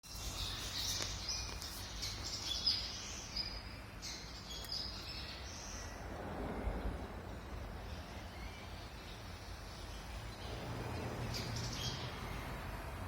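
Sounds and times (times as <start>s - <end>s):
birds chirping and twittering: 0.0s - 13.0s
low background rumble: 5.2s - 13.0s.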